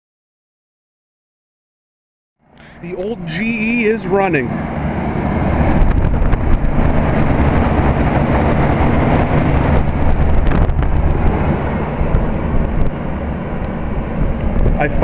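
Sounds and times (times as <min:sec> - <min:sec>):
air conditioner fan rushing: 0:02.5 - 0:15.0
low hum: 0:02.5 - 0:15.0
rattles of old fan: 0:02.6 - 0:15.0.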